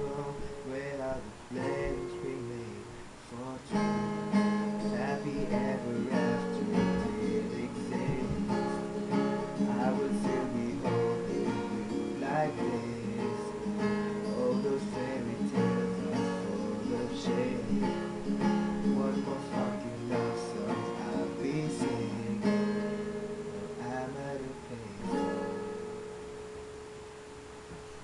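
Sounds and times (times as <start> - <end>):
acoustic guitar strumming chords: 0.0 - 28.0.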